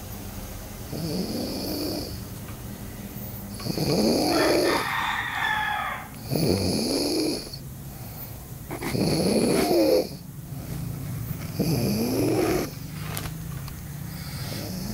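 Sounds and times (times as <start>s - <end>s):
loud snoring: 0.9s - 2.3s, 3.5s - 8.1s, 8.7s - 13.2s, 14.0s - 14.9s
quiet breathing: 7.4s - 14.9s.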